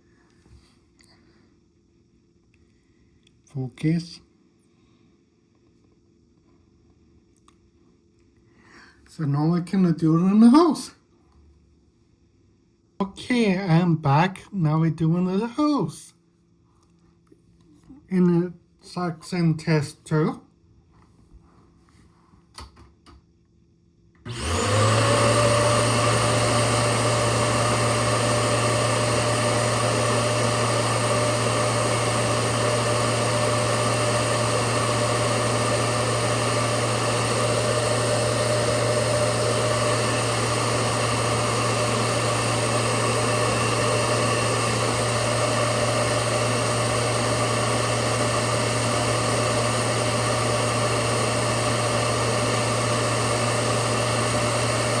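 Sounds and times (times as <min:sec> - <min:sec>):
vacuum cleaner running: 0:24.2 - 0:55.0.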